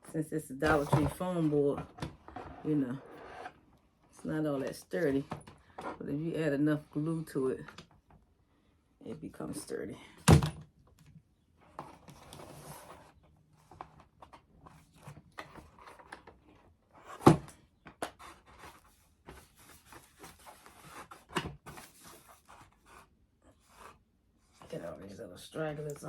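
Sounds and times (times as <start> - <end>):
foam board handling taps and rustling: 17.2 - 22.2.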